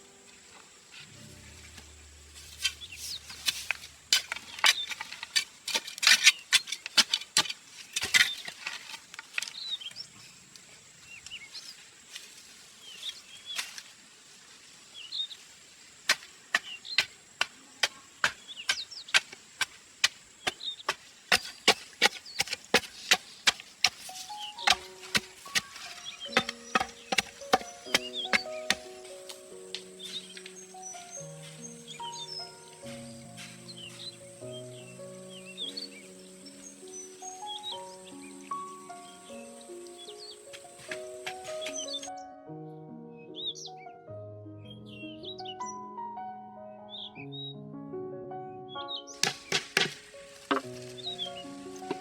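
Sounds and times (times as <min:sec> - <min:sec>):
small birds chirping: 0:00.0 - 0:14.0, 0:14.8 - 0:42.4, 0:48.7 - 0:52.0
chopping knocks on wood: 0:20.5 - 0:29.0, 0:49.2 - 0:50.8.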